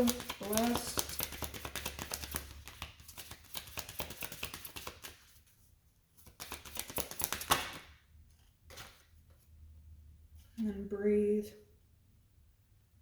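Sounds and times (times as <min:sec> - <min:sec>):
cards being shuffled: 0:00.0 - 0:05.5, 0:06.2 - 0:09.4.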